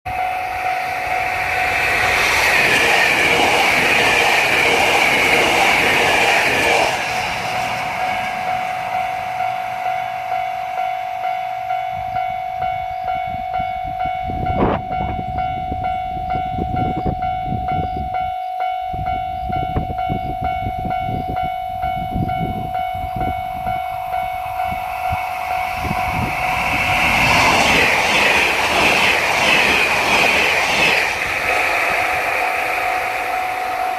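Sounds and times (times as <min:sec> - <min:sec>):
level-crossing warning bell ringing: 0:00.0 - 0:33.9
rushing hiss: 0:00.5 - 0:10.6, 0:25.2 - 0:33.9
train wheels clattering over rail joints: 0:25.9 - 0:33.9.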